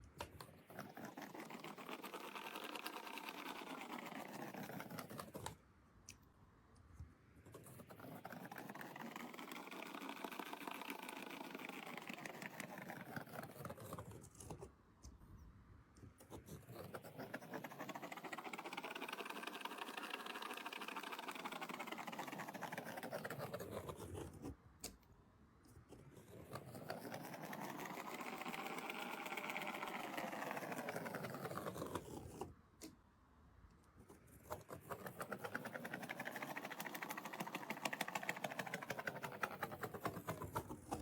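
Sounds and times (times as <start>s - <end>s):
paint roller on wet paint: 0.4s - 5.5s, 7.5s - 14.3s, 34.1s - 41.0s.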